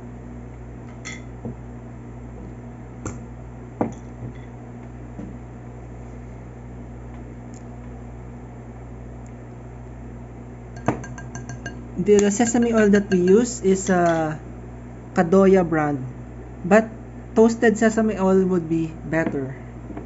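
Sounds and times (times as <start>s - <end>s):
steady low hum: 0.0s - 20.0s
utensil clinking glass bowl: 10.8s - 14.4s.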